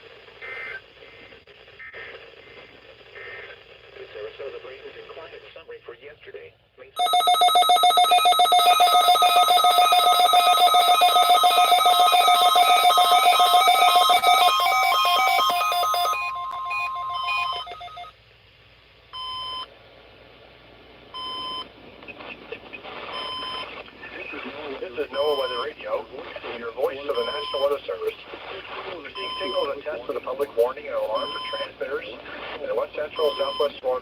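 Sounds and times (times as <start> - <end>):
pulsing electronic alarm: 7.0 - 18.1
short beeps: 7.0 - 18.1
steady alert tone: 7.0 - 18.1.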